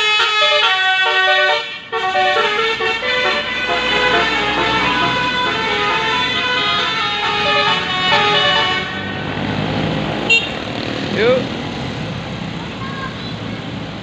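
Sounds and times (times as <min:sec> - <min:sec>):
musical bus horn tune: 0:00.0 - 0:09.2, 0:10.3 - 0:10.6
bus engine running: 0:00.0 - 0:14.0.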